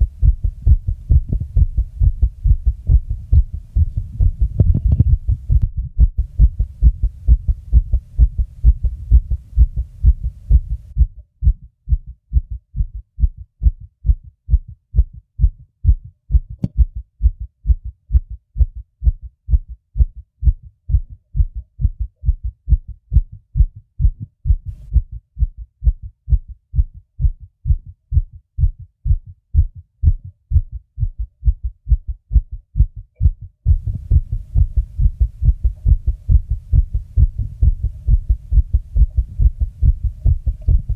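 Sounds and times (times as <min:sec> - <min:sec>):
low rumble: 0:00.0 - 0:19.2, 0:31.0 - 0:40.9
fast heartbeat: 0:00.0 - 0:40.9.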